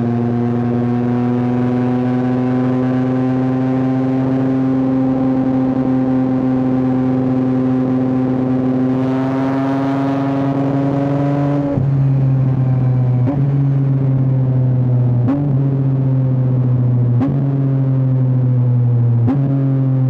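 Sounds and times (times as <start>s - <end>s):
motorcycle engine revving up: 8.8s - 11.8s.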